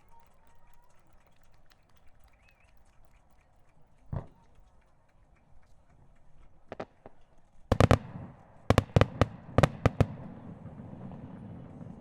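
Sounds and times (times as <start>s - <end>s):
fireworks bangs: 6.7s - 12.0s.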